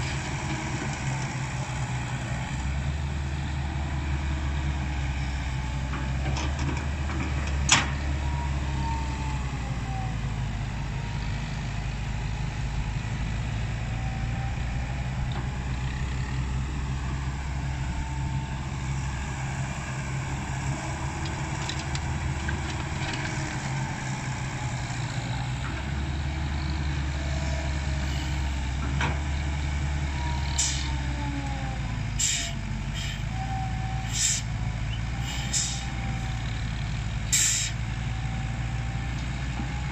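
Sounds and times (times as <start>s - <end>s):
excavator diesel engine running: 0.0s - 39.9s
hissing and clanking bursts: 34.1s - 34.5s, 37.3s - 37.8s.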